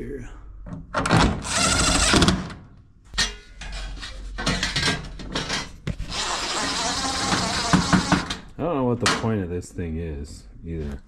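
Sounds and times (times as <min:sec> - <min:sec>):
sheet metal clattering: 0:03.1 - 0:05.8.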